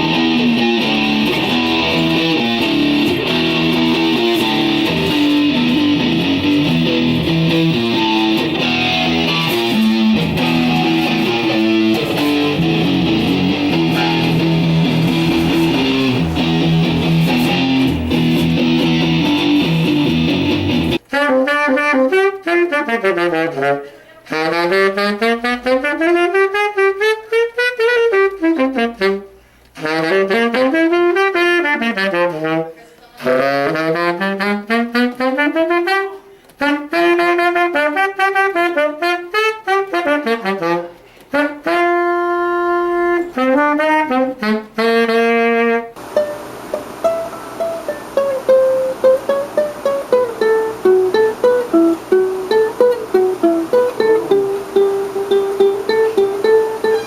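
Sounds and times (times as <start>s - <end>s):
plucked strings: 0.0s - 21.0s, 46.1s - 57.0s
strummed guitar: 0.0s - 21.4s, 46.0s - 57.0s.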